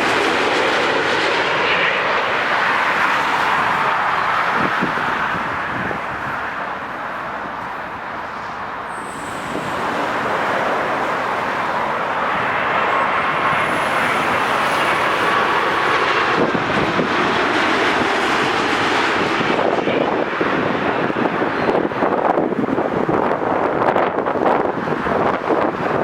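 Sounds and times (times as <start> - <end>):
jet engines roaring: 0.0 - 26.0
faint high whine: 3.6 - 16.2.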